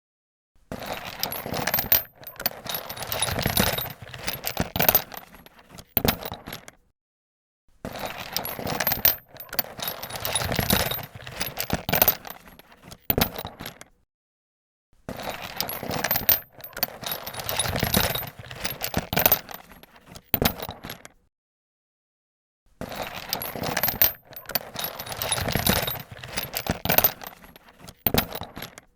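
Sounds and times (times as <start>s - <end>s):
metal hand tools clattering: 0.8s - 6.4s, 8.1s - 13.4s, 15.5s - 19.8s, 23.0s - 28.8s.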